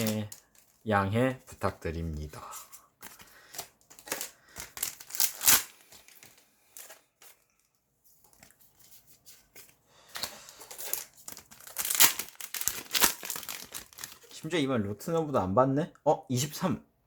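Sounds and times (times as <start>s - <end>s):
foil wrappers crinkling and tearing: 0.0s - 1.0s, 3.0s - 7.7s, 10.2s - 14.5s.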